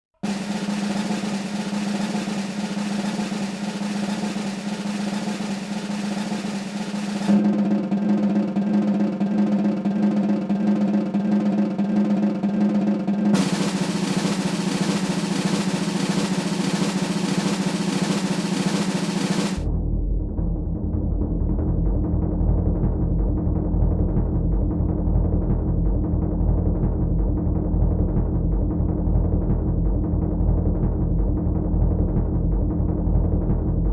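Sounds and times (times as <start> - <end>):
snare drum roll: 0.2 - 19.7.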